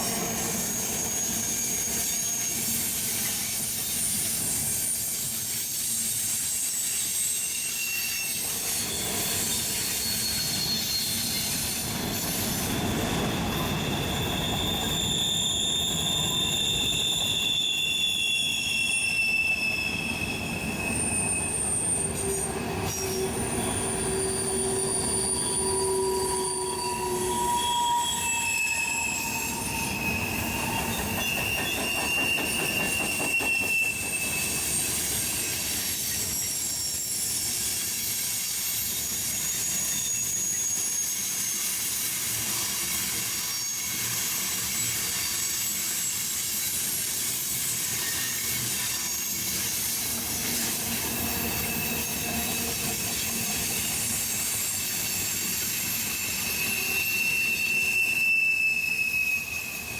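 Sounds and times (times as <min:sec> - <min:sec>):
train wheels squealing: 0:00.0 - 0:59.9
rumble of wheels on track: 0:42.2 - 0:57.0.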